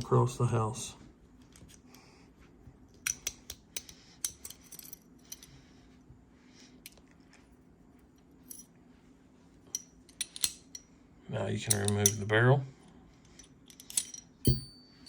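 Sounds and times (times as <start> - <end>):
small metal clicks: 11.7 - 12.3, 13.3 - 14.7.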